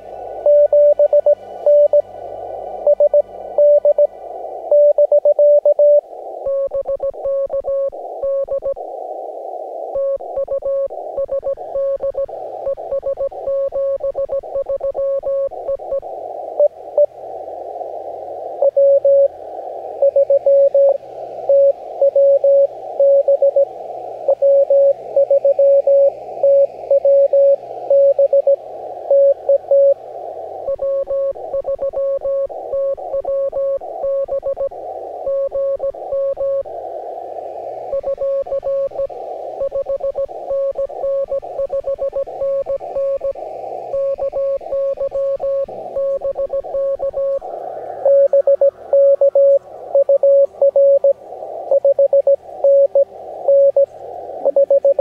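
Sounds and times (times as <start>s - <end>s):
fainter higher morse signal: 0.0s - 55.0s
receiver hiss: 0.0s - 55.0s
morse code tone: 0.4s - 2.1s, 2.8s - 4.1s, 4.7s - 8.8s, 18.6s - 19.3s, 20.0s - 23.7s, 24.3s - 30.0s, 30.7s - 34.7s, 35.3s - 36.6s, 43.9s - 47.4s, 48.0s - 51.1s, 51.7s - 53.9s, 54.5s - 55.0s.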